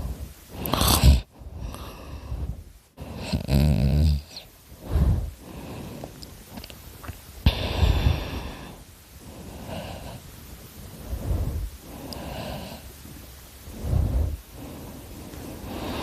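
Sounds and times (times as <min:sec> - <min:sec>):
person snoring: 0:00.6 - 0:06.2, 0:07.5 - 0:10.2, 0:13.7 - 0:16.0.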